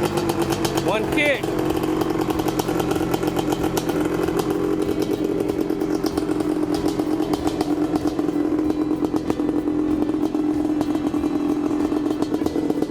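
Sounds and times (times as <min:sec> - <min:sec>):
two-stroke engine idling: 0:00.0 - 0:12.9.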